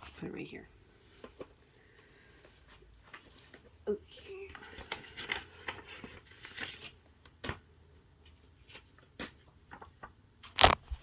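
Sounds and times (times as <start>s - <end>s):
soft rustling: 0.0s - 7.4s.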